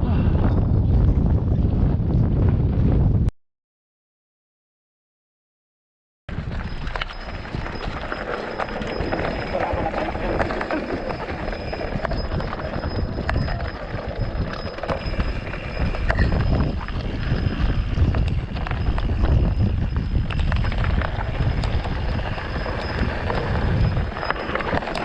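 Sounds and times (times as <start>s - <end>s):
wind buffeting microphone: 0.0s - 3.3s, 6.3s - 25.0s
mountain bike rattling: 6.3s - 25.0s.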